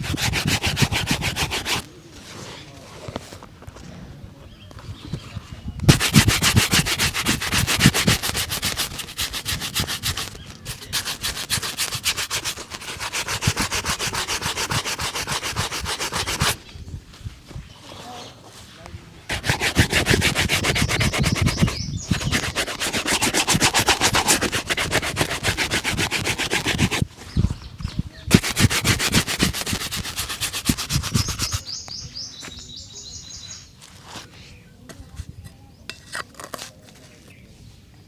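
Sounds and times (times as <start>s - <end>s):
shoe buffing strokes: 0.0s - 1.9s, 5.9s - 16.6s, 19.3s - 27.1s, 28.3s - 31.8s.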